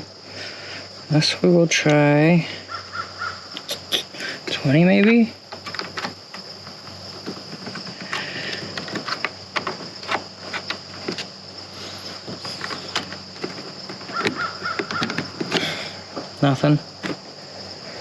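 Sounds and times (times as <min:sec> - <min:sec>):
steady high-pitched hiss: 0:00.0 - 0:18.0
clicks and knocks of small parts: 0:05.0 - 0:11.4, 0:12.2 - 0:16.3.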